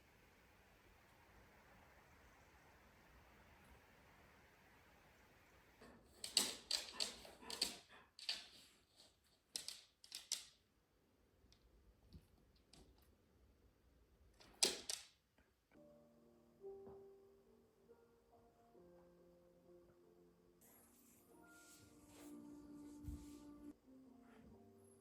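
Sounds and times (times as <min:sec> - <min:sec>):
objects clicking and rustling: 0:05.8 - 0:10.6, 0:14.4 - 0:15.2.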